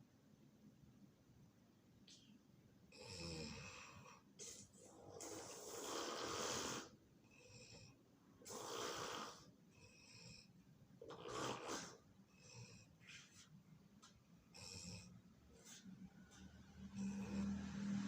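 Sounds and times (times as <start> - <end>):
loud snoring: 2.9 - 4.2, 4.9 - 12.9, 14.5 - 15.8, 16.7 - 18.0
soft breathing: 11.2 - 13.6, 14.5 - 18.0.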